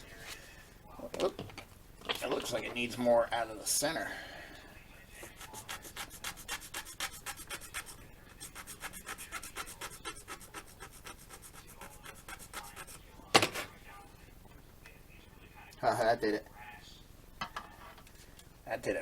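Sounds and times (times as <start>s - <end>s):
file rasping plastic: 5.3s - 13.0s.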